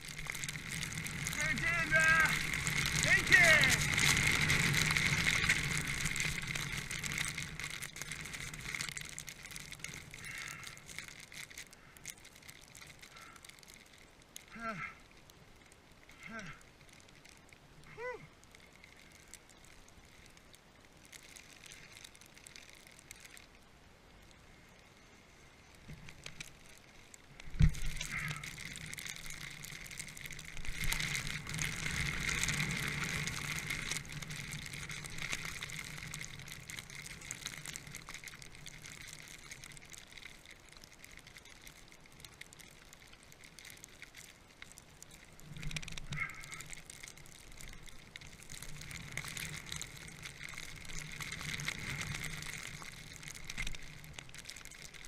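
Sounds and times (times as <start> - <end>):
hissing snow under skis: 0.0 - 12.0.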